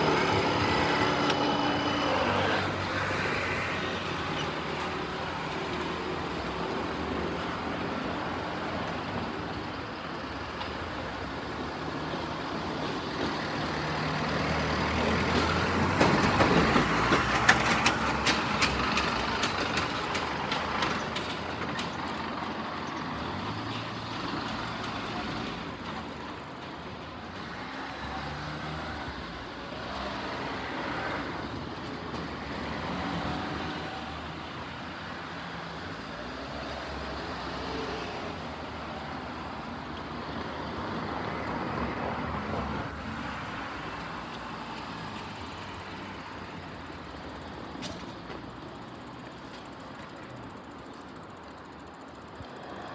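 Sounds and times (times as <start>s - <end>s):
vehicle passing by: 0.0s - 5.6s.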